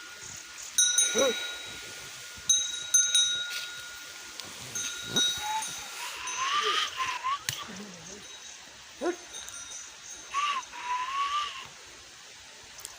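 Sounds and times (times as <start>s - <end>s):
metal bell ringing: 0.7s - 7.0s, 7.9s - 10.4s.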